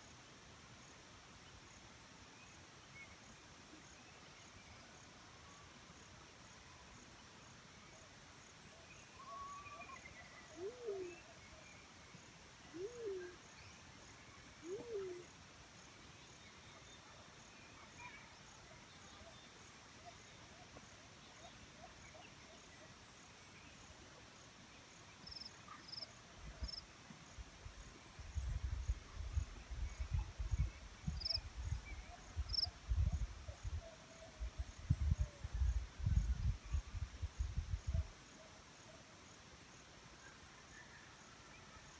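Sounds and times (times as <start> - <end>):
dove hooting: 12.7 - 13.4, 14.6 - 15.2.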